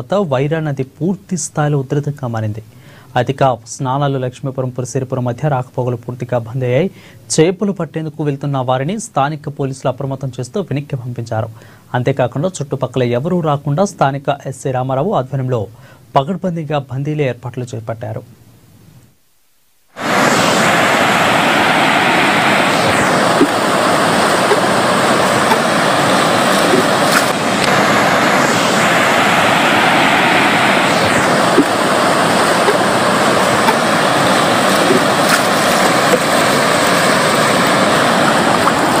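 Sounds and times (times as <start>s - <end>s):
floodwater rushing: 20.0s - 39.0s.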